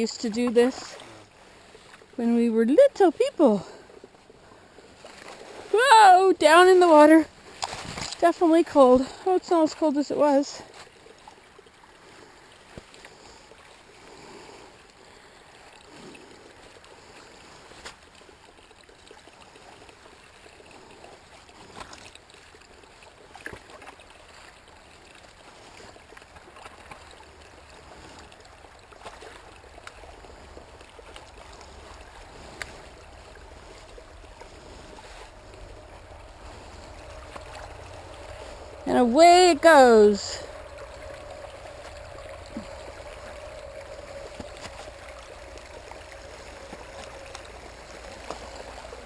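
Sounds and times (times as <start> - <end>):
brook trickling and gurgling: 0.0 - 49.0
splashes of leaves pulled from water: 7.5 - 8.2.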